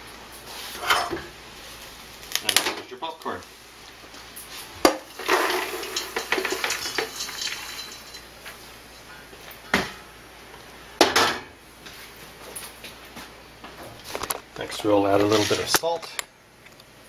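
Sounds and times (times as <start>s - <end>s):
metal pot and lid clattering: 5.0s - 8.3s.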